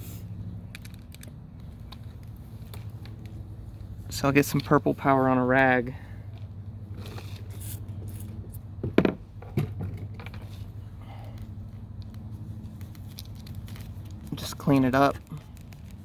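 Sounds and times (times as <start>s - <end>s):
handling noises: 6.2s - 16.0s.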